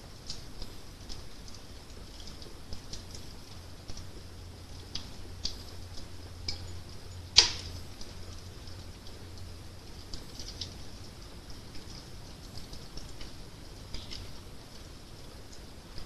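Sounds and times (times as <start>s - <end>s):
low steady rumble: 0.0s - 16.0s
wood fire crackling: 0.0s - 16.0s.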